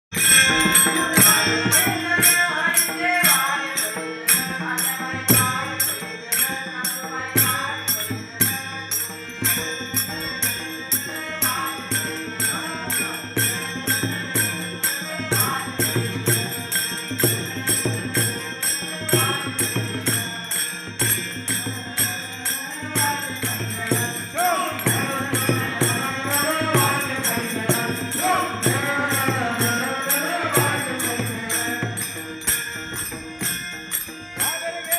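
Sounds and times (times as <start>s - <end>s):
small hand cymbals: 0.1s - 34.9s
person singing a melody: 21.6s - 32.1s.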